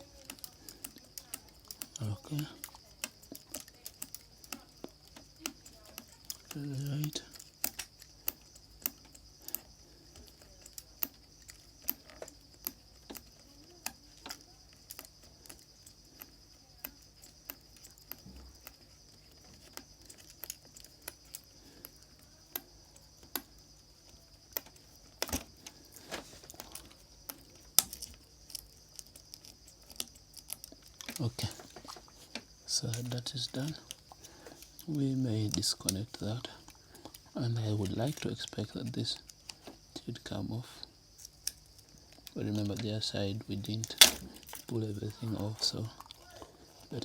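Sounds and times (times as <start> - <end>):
small clicks and taps of tools: 0.0 - 39.8, 41.1 - 42.9, 43.7 - 44.7.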